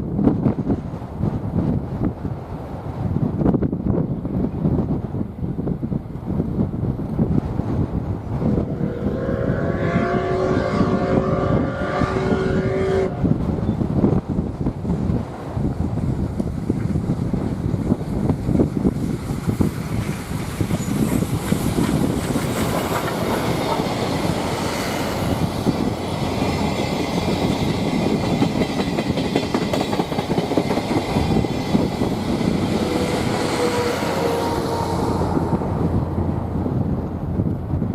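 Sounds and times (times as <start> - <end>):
train wheels clattering over rail joints: 16.2 - 33.2.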